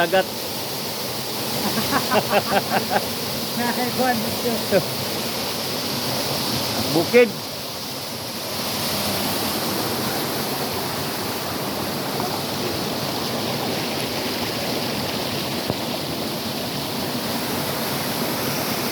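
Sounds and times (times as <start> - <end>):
water flowing: 0.0 - 18.9.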